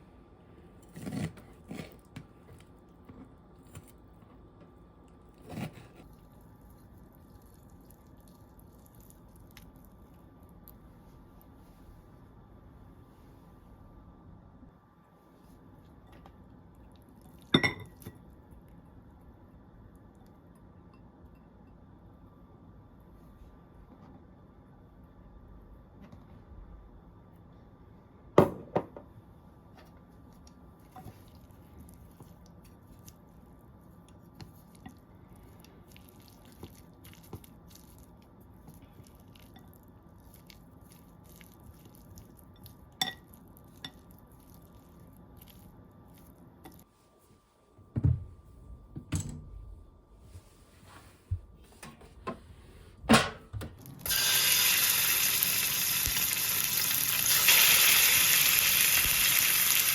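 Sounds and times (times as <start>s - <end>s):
food sizzling on a hot plate: 54.0s - 59.9s.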